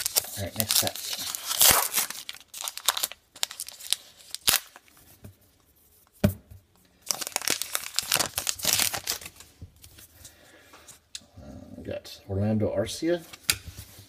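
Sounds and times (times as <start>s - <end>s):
wrapper tearing and crinkling: 0.0s - 4.9s, 7.0s - 9.5s.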